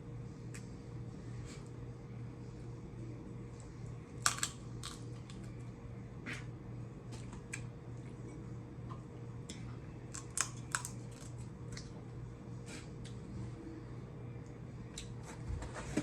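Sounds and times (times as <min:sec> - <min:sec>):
steady low hum: 0:00.0 - 0:16.0
crab shells cracking: 0:04.2 - 0:05.5, 0:10.1 - 0:11.4.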